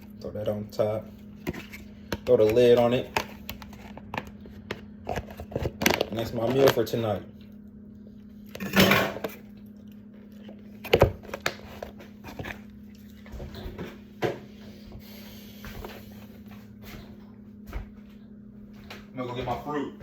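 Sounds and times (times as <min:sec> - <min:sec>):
steady low hum: 0:00.0 - 0:20.0
dishes and containers clunking: 0:08.6 - 0:09.4.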